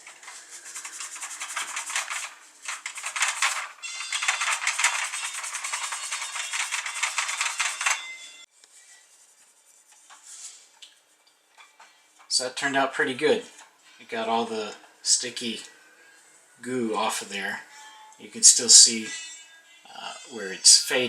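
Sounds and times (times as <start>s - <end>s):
rapid scrubbing on plastic: 0.0s - 8.1s.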